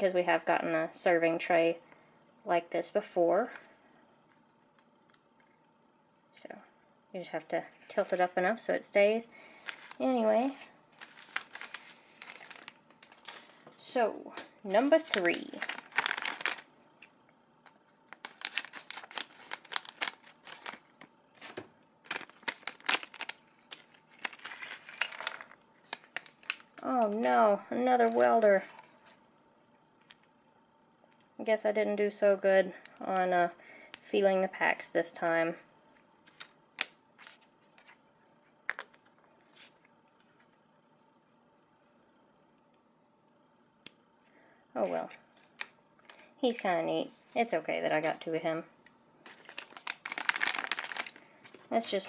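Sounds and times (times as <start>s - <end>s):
foil wrapper crinkling: 9.5s - 13.6s, 14.7s - 17.1s, 17.7s - 27.3s, 49.2s - 52.0s.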